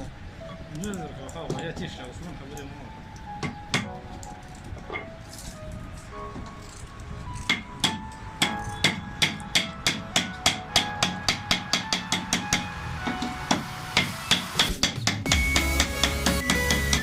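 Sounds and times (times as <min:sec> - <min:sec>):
hammer striking metal: 0:03.4 - 0:04.0, 0:07.4 - 0:17.0.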